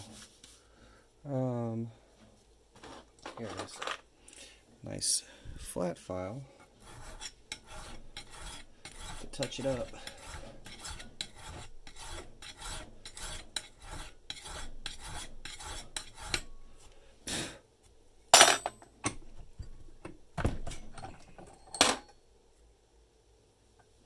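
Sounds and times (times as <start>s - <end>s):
hand file rasping on metal: 6.7s - 16.6s.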